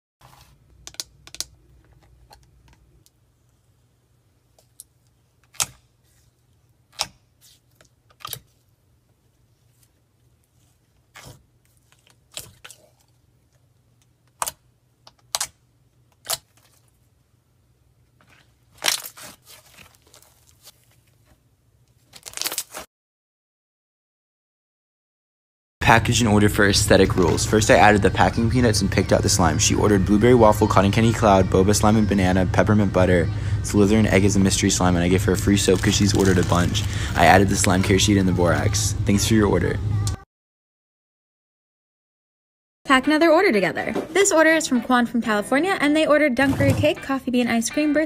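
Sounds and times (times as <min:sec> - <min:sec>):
packing tape tearing: 0:15.2 - 0:16.9, 0:18.7 - 0:21.0, 0:21.9 - 0:22.9, 0:35.4 - 0:38.7
paper and cardboard crinkling: 0:18.1 - 0:22.9, 0:35.1 - 0:38.8.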